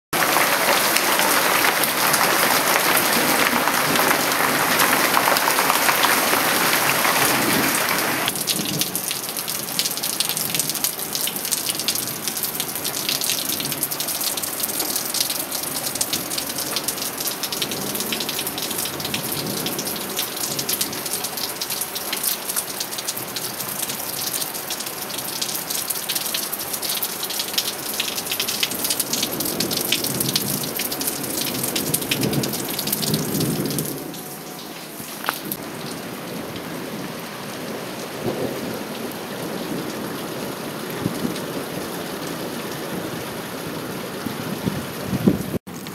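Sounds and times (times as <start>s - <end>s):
heavy rain: 0.1s - 45.9s
raindrops ticking: 0.2s - 7.4s, 8.3s - 36.6s.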